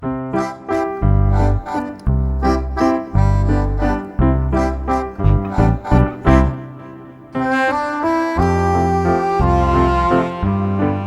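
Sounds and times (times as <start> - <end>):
keyboard music: 0.0 - 11.0
deep bass note: 1.0 - 6.6.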